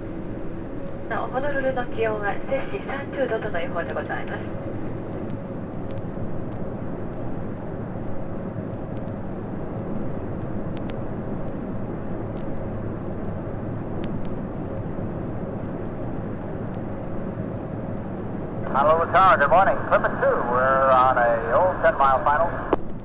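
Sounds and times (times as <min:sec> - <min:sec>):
airplane cabin engine rush: 0:00.0 - 0:23.0
faint steady hum: 0:00.0 - 0:23.0
small clicks: 0:10.7 - 0:11.6.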